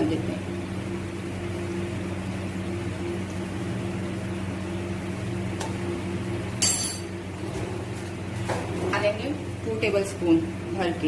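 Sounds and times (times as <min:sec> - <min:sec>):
low kitchen hum: 0:00.0 - 0:11.0
utensil clink: 0:06.6 - 0:07.1.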